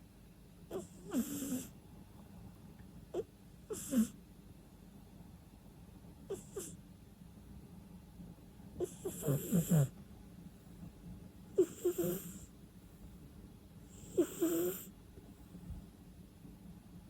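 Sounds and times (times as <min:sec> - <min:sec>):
cat snoring: 0:00.7 - 0:01.8, 0:03.1 - 0:04.2, 0:06.3 - 0:06.8, 0:08.8 - 0:10.0, 0:11.5 - 0:12.5, 0:13.9 - 0:14.9.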